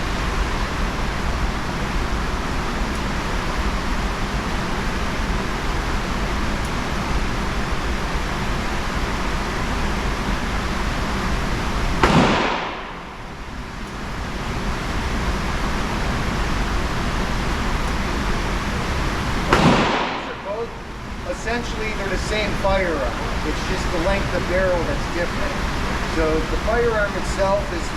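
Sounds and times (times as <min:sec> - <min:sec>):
background hiss: 0:00.0 - 0:27.9
revolver gunshot: 0:12.0 - 0:13.2, 0:19.5 - 0:20.7.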